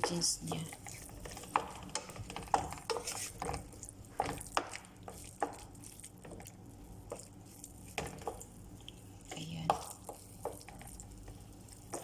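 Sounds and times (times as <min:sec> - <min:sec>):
spoon scraping a pan: 0:00.0 - 0:06.4
faint sizzle: 0:00.0 - 0:12.0.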